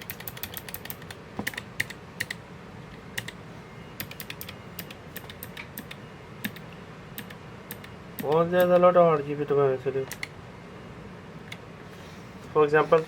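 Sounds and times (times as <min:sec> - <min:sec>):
clicky keyboard key presses: 0:00.0 - 0:02.4.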